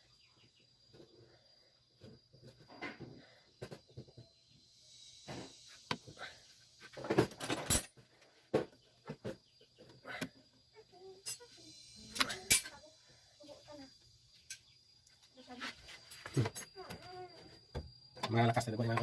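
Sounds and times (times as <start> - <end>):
faint high insect drone: 0.0 - 19.0
metal tools clinking and knocking: 7.0 - 8.0, 11.2 - 11.5, 12.1 - 12.8.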